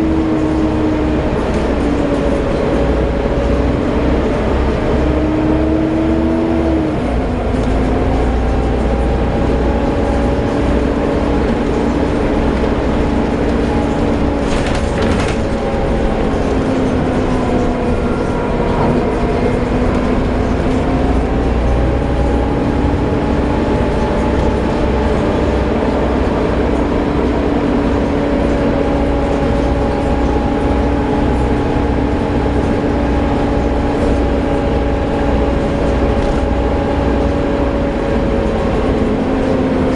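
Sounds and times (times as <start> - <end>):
bus engine whine: 0.0 - 39.9.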